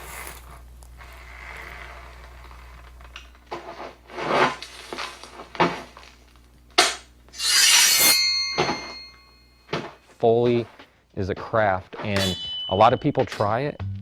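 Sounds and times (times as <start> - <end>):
rough scraping strokes: 0.0 - 6.0, 7.4 - 9.2
metallic ring: 7.4 - 10.1, 12.1 - 13.5.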